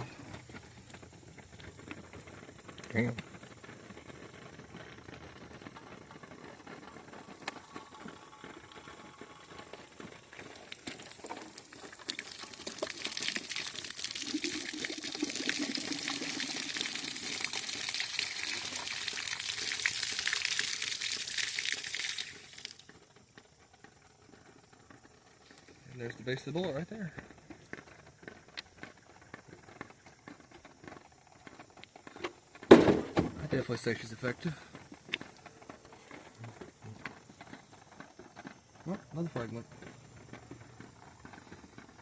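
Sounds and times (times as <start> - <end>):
water pouring from plastic jug: 5.4 - 23.3.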